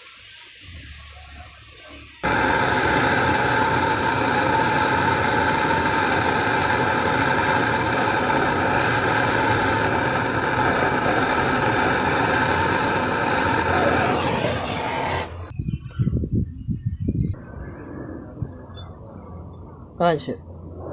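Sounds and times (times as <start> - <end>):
machine humming loudly: 2.2 - 15.5.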